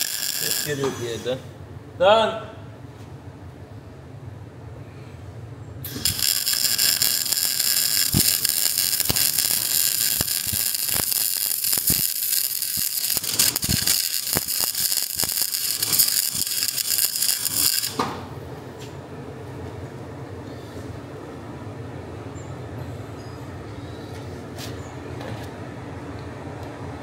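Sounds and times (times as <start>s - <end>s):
sharp ticks and clicks: 0.0s - 0.7s, 5.9s - 18.0s
angle grinder on steel: 0.0s - 1.3s, 5.9s - 18.0s.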